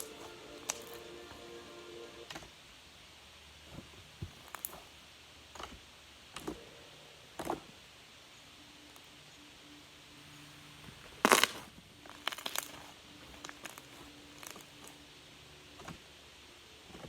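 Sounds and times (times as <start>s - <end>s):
slime clicking and popping: 11.2s - 12.8s, 13.4s - 15.0s.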